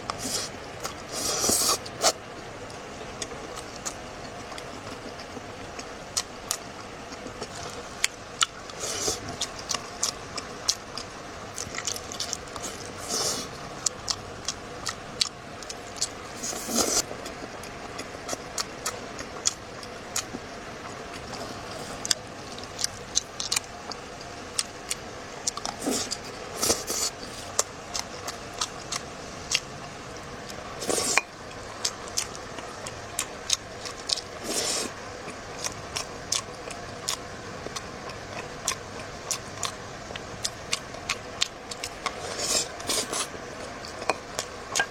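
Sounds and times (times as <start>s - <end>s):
wet chewing and lip-smacking: 31.8s - 44.9s.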